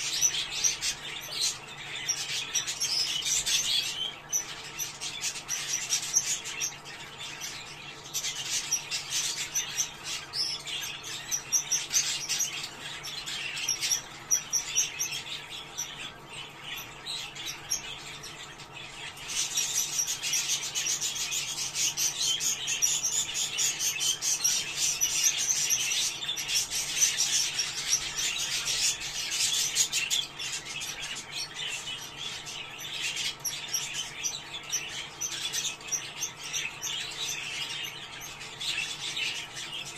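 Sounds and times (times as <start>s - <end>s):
budgerigars chattering and warbling: 0.0s - 39.9s.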